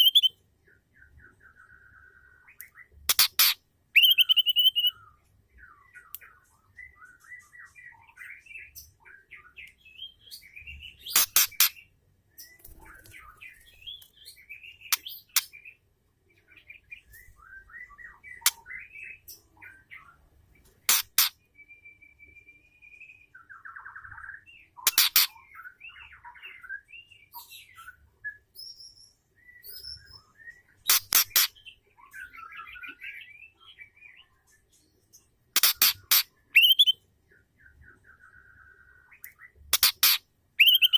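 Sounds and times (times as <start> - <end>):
bird chirps and whistles: 0.0 - 0.4, 2.6 - 5.1, 35.6 - 37.0, 39.7 - 40.9.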